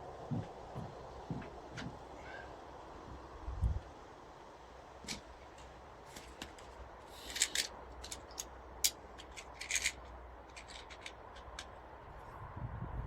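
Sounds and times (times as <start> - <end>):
small clicks and rubbing: 5.0 - 11.8.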